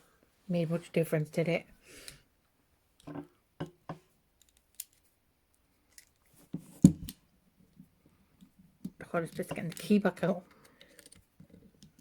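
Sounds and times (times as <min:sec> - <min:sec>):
handcuff metallic clicks and scrapes: 0:09.1 - 0:12.0.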